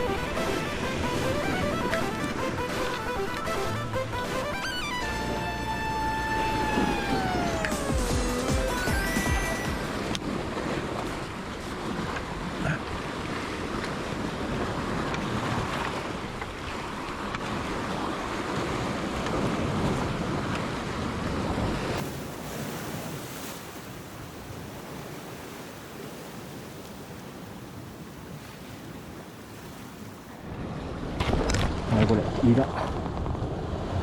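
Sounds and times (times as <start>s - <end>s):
surf washing against rocks: 8.7s - 34.0s.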